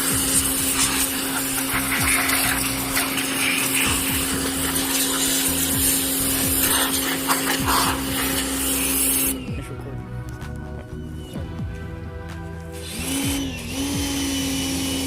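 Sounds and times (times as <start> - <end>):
water jet hissing: 0.0 - 9.6
pressure washer motor hum: 0.0 - 15.0.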